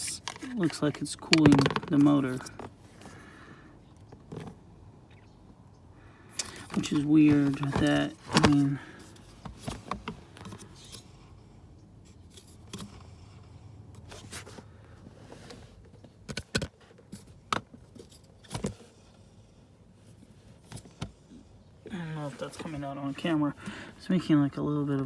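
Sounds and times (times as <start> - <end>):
clicks and knocks from handling: 0.0 - 2.8.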